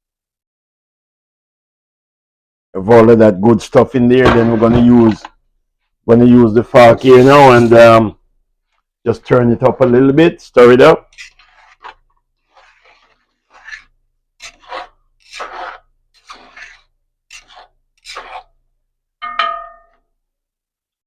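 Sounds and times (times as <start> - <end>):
fork scraping rice in pot: 6.8 - 8.0, 10.9 - 18.6
fork clinking on pot: 19.2 - 20.0.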